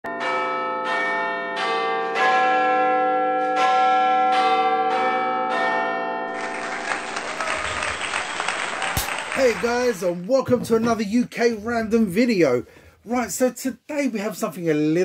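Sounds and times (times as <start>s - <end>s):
church bells pealing: 0.1s - 7.6s.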